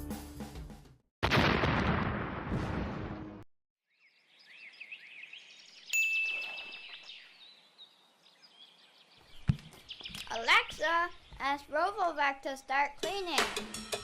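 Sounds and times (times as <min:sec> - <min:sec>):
faint birds chirping: 0:03.9 - 0:12.8
bright ding: 0:06.0 - 0:06.8.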